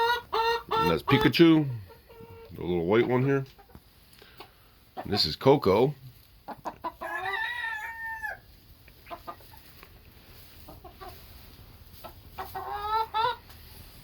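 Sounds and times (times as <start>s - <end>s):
chicken calling: 0.0s - 5.3s, 6.5s - 9.8s, 12.0s - 13.6s
chickens clucking softly: 0.0s - 5.4s, 6.0s - 13.7s.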